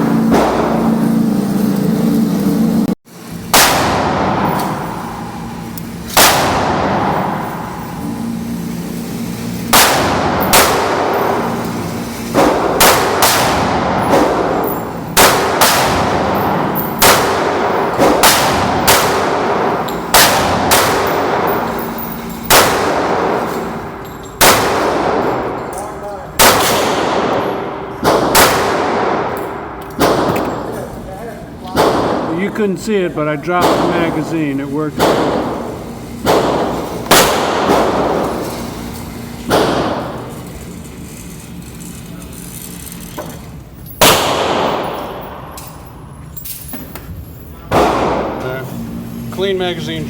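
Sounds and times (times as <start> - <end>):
other shooters' gunshots: 0.0 - 1.4, 3.5 - 5.3, 6.1 - 7.9, 9.7 - 25.7, 26.4 - 30.8, 31.7 - 40.4, 44.0 - 45.6, 47.7 - 48.6
pistol gunshots echoing: 3.5 - 7.9, 9.7 - 25.7, 26.4 - 30.8, 31.7 - 38.4, 39.4 - 40.3, 44.0 - 45.7, 47.7 - 48.4.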